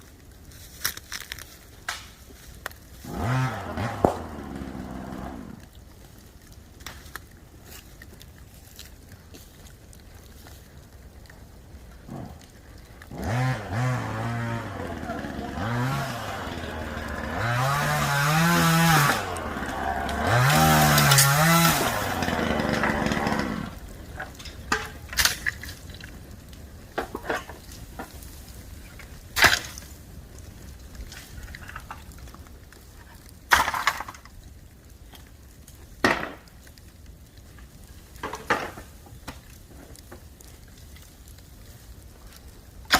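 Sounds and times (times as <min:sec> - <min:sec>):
sharp fire pops: 0:00.0 - 0:03.1, 0:03.7 - 0:13.2, 0:19.0 - 0:42.9
campfire crackling: 0:00.0 - 0:42.9
engine revving: 0:03.1 - 0:05.6, 0:13.1 - 0:23.7.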